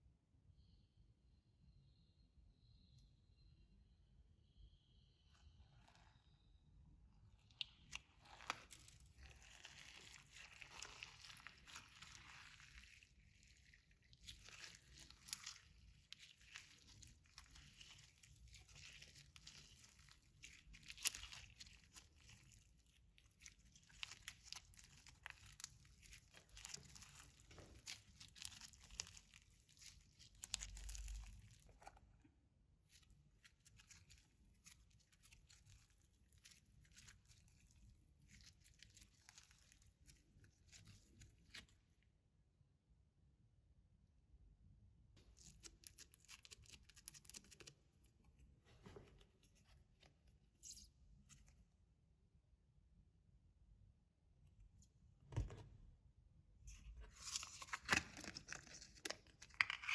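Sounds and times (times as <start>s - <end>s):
slime being kneaded: 7.3s - 32.0s.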